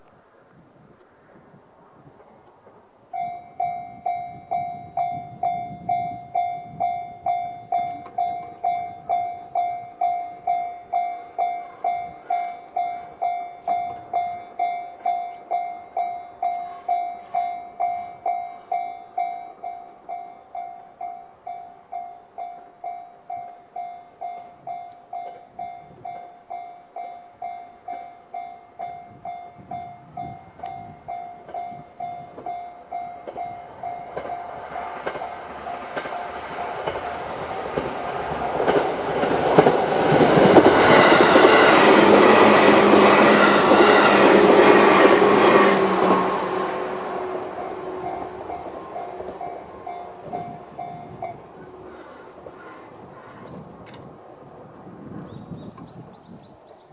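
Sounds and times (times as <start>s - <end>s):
level crossing bell ringing: 3.2s - 34.7s.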